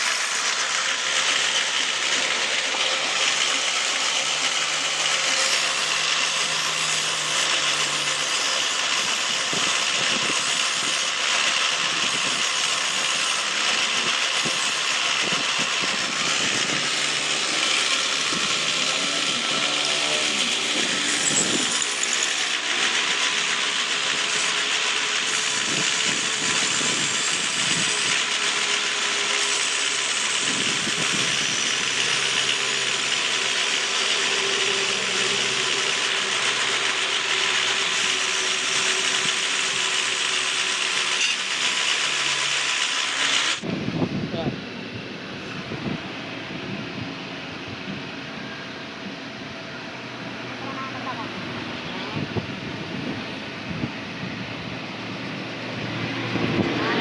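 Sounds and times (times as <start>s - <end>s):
power tool hissing: 0.0s - 43.7s.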